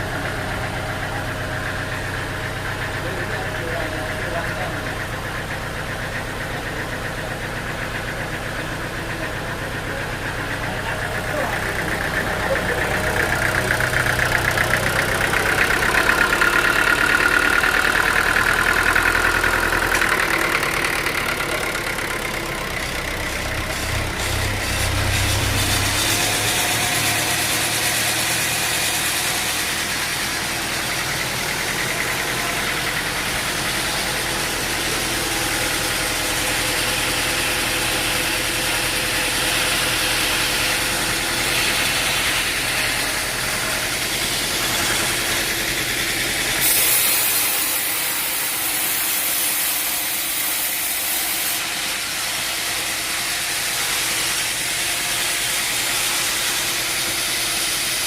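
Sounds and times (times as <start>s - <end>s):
engine-driven machine running: 0.0s - 58.0s
hissing machine noise: 0.0s - 58.0s.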